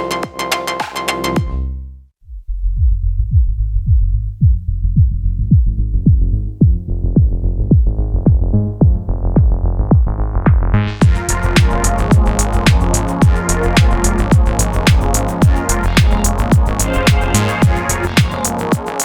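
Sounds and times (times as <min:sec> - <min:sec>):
kick drum: 0:01.4 - 0:01.6, 0:02.3 - 0:18.9
bass line: 0:01.4 - 0:19.0
hi-hats: 0:11.0 - 0:19.0.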